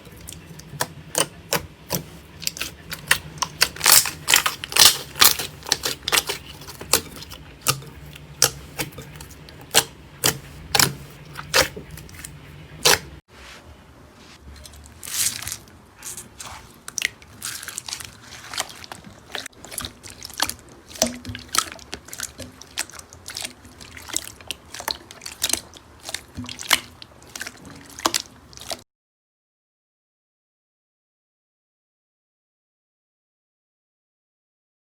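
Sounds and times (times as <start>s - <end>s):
slime crackling and popping: 1.2s - 7.8s.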